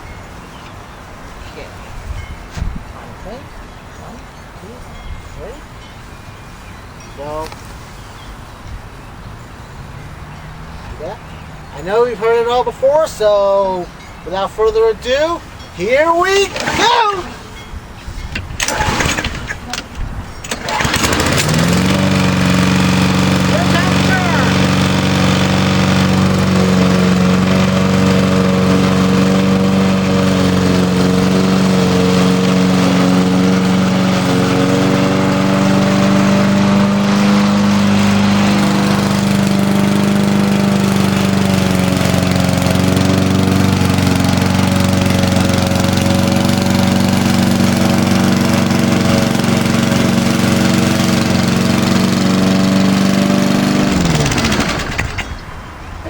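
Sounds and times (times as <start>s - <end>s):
lawn mower engine running: 15.3s - 55.9s.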